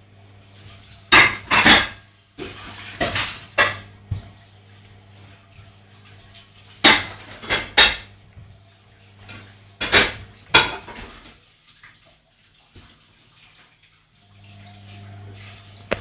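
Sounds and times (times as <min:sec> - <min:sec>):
washing machine motor hum: 0:00.0 - 0:16.0
washing machine clattering knocks: 0:06.8 - 0:08.1, 0:09.8 - 0:11.2.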